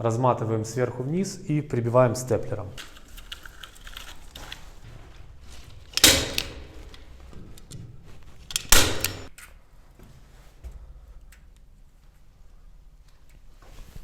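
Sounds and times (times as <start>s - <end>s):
rustling: 2.8s - 9.3s
staple gun clacks: 5.9s - 7.7s, 8.5s - 9.3s.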